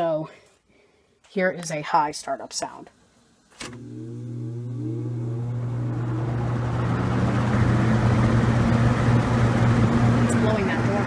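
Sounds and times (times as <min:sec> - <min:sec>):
box fan motor humming: 0:03.6 - 0:11.0.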